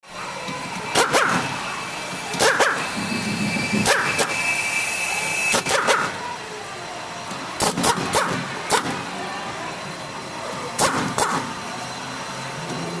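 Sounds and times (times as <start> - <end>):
dog barking: 2.4 - 2.8, 3.8 - 4.2, 7.8 - 8.4.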